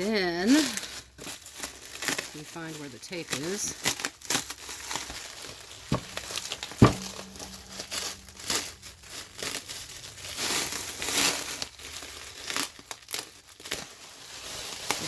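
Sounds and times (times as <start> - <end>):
packing material rustling: 0.0 - 15.0
sharp knock: 6.8 - 8.1.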